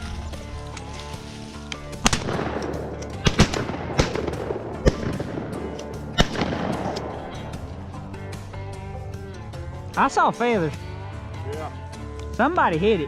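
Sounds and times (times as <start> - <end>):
background music: 0.0 - 13.0
shotgun shots with echo: 2.0 - 7.3.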